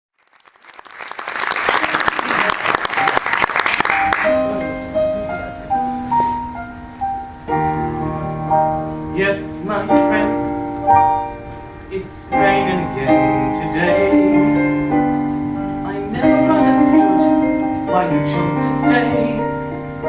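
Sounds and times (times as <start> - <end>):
audience clapping: 0.1 - 4.7
piano notes and chords: 2.8 - 20.0.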